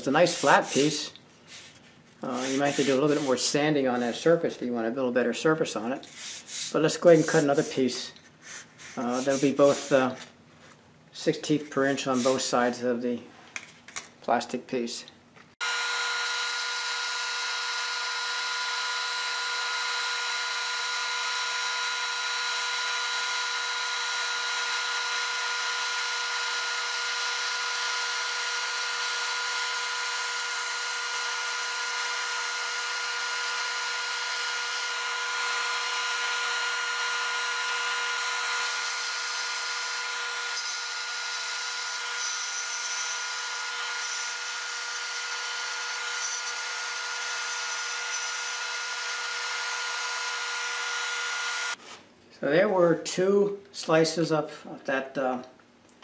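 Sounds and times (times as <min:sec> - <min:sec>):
band saw cutting plastic: 0:00.0 - 0:03.4, 0:15.6 - 0:51.8.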